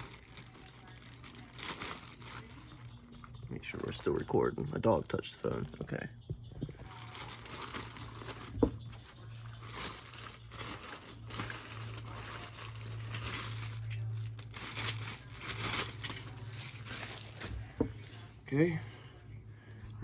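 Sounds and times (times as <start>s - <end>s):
packaging crinkling and rustling: 0.0s - 4.4s, 6.8s - 17.9s.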